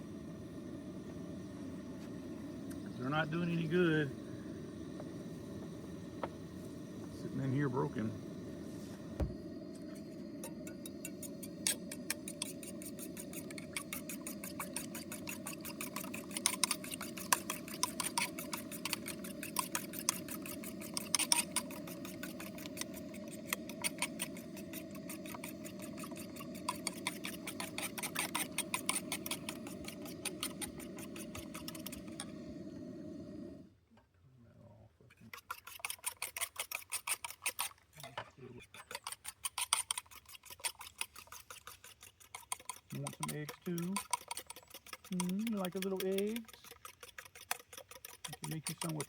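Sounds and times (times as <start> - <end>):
steady low hum: 0.0 - 33.8
fork beating eggs in a bowl: 9.2 - 33.5, 35.1 - 49.0.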